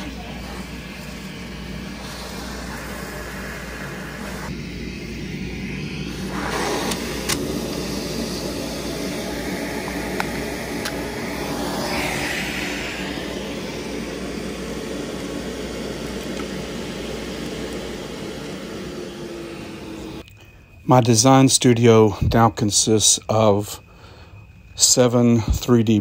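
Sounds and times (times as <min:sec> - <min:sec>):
router spindle running: 0:00.0 - 0:20.2
shop vac running: 0:00.0 - 0:20.4
bright hiss: 0:00.0 - 0:25.9.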